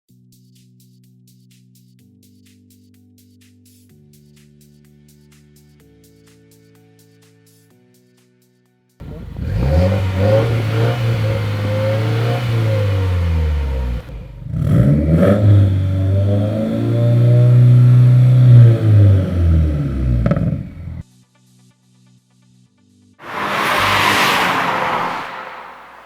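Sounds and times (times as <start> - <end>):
car engine revving: 9.0 - 21.0, 23.2 - 26.0.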